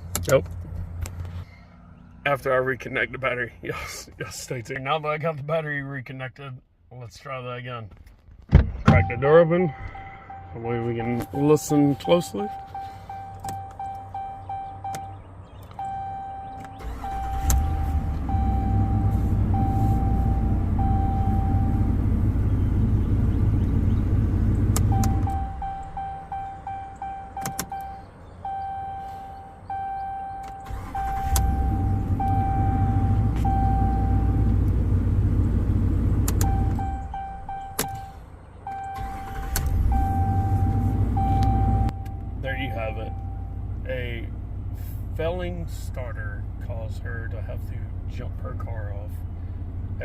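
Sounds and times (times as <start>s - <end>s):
sharp clicks: 0.0s - 1.3s, 14.9s - 15.9s, 24.6s - 25.5s, 27.4s - 28.0s, 36.2s - 36.8s
truck engine starting and running: 0.0s - 4.9s, 8.1s - 50.0s
vehicle chime beeping: 8.9s - 22.0s, 24.8s - 34.6s, 36.3s - 43.9s.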